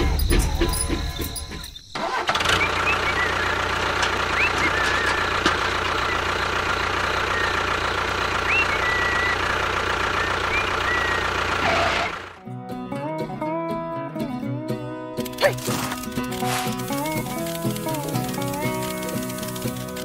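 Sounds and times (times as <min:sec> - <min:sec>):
small engine running: 0:00.0 - 0:12.4, 0:15.2 - 0:20.0
short birdlike chirps: 0:08.4 - 0:09.4.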